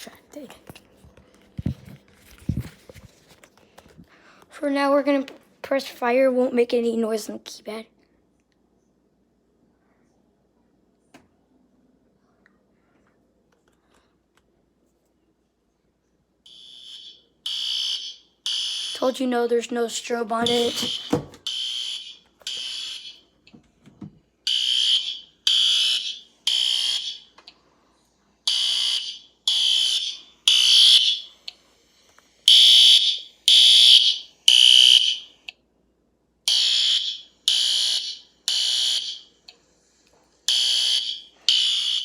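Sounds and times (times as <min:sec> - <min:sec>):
fire alarm horn blasts: 0:16.5 - 0:19.3, 0:20.3 - 0:23.2, 0:24.5 - 0:27.3, 0:28.5 - 0:31.3, 0:32.5 - 0:35.3, 0:36.5 - 0:39.2, 0:40.5 - 0:42.0.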